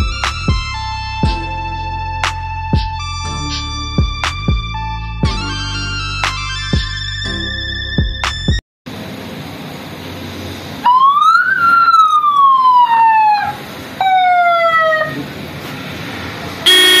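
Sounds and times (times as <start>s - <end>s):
electronic police siren wail: 10.9s - 15.2s, 16.7s - 17.0s.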